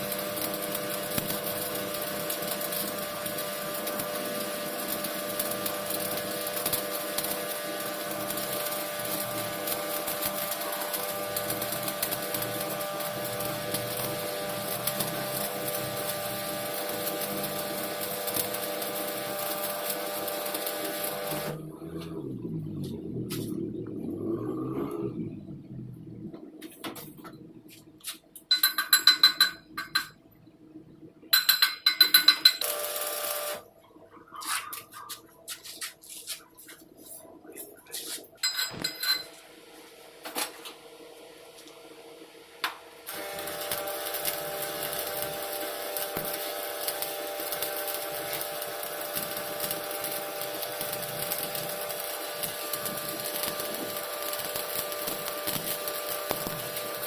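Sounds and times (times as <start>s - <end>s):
welding arc crackling: 0.0s - 25.2s, 31.4s - 33.7s, 42.6s - 57.0s.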